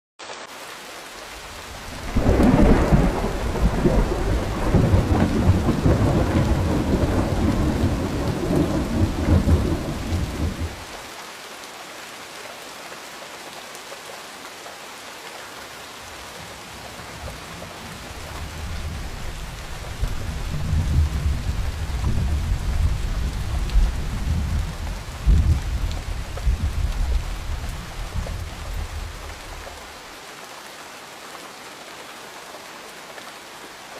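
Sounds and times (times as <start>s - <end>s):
steady rain falling: 0.2s - 33.9s
thunder rolling: 1.9s - 10.8s, 18.3s - 29.2s.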